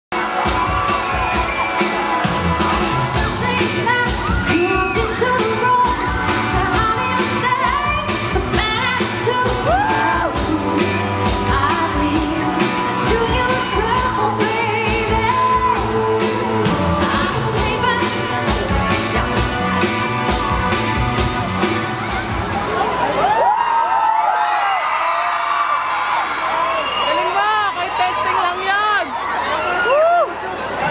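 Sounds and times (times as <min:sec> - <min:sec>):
live pop band with drum beat: 0:00.1 - 0:23.6
woman singing: 0:03.1 - 0:19.8.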